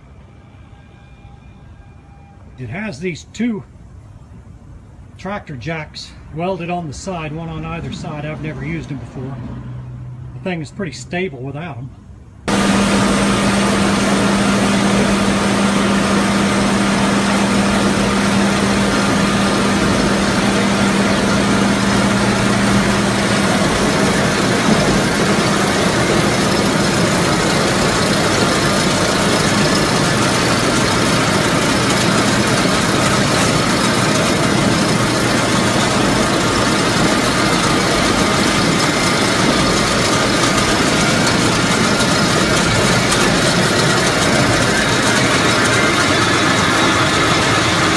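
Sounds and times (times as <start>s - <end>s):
loud machine drone: 12.4s - 47.9s.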